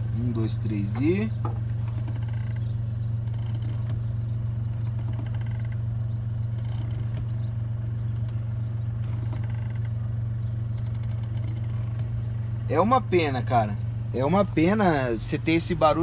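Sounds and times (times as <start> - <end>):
clutch pedal squeaking: 0.0 - 12.5
car engine idling: 0.0 - 16.0.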